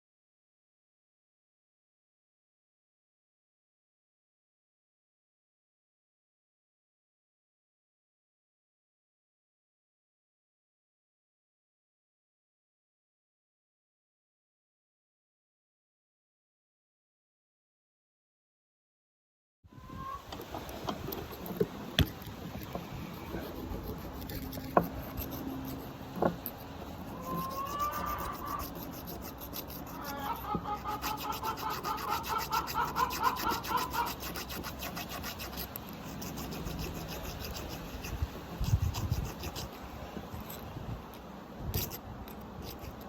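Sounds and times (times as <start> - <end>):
hand scraping a workpiece: 20.3 - 40.7
rhythmic squeaky chatter: 20.5 - 39.7.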